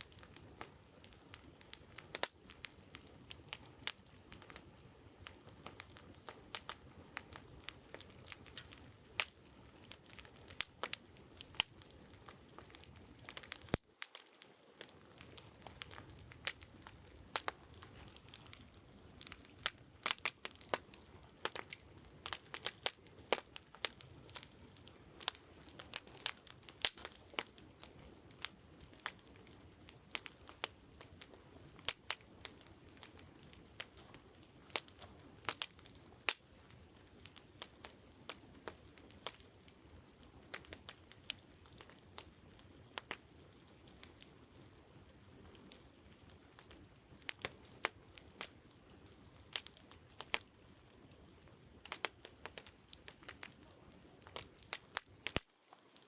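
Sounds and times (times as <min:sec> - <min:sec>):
campfire crackling: 0:00.0 - 0:56.0.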